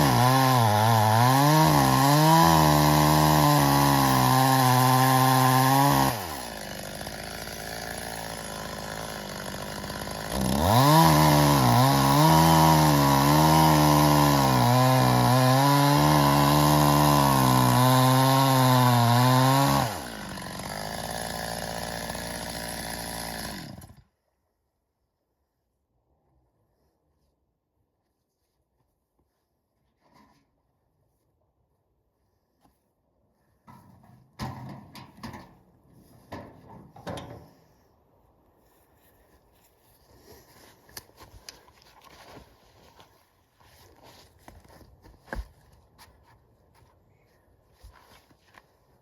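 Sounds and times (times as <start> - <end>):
chainsaw idling: 0.0 - 24.0
chainsaw cutting logs: 0.0 - 24.2.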